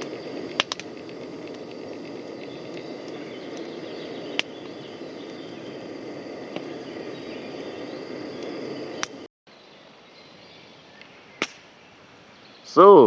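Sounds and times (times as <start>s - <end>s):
sharp fire pops: 0.0s - 9.3s, 11.4s - 11.7s
campfire crackling: 0.0s - 13.0s.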